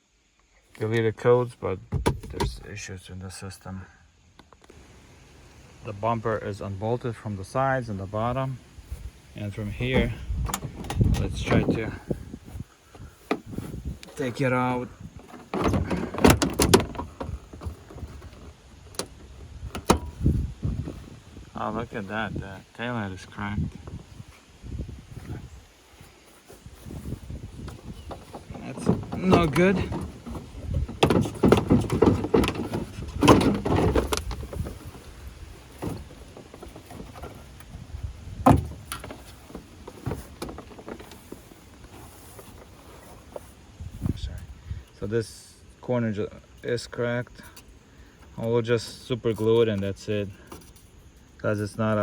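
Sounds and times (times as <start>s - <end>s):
plastic bumper cover knocking and rattling: 1.9s - 2.7s, 9.7s - 12.0s, 13.3s - 21.2s, 27.0s - 42.7s
plastic rubbing: 13.0s - 22.5s, 25.0s - 44.0s.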